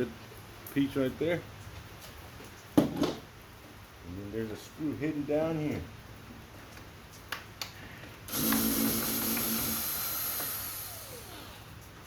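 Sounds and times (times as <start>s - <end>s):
cordless drill whirring: 8.3s - 11.6s.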